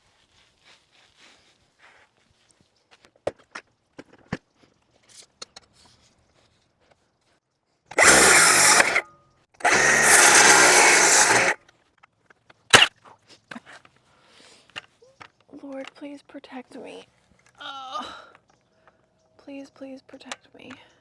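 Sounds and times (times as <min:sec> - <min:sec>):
electric saw cutting wood: 0:07.9 - 0:09.0, 0:09.6 - 0:11.6.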